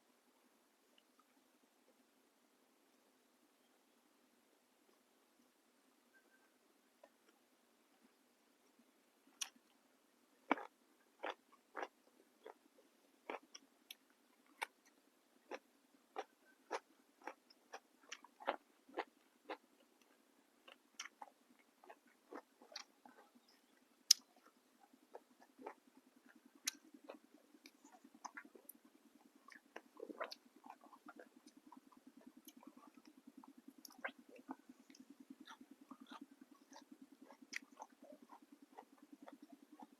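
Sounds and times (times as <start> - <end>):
low steady hum: 0.0 - 39.9
person crunching raw vegetables: 10.5 - 12.6.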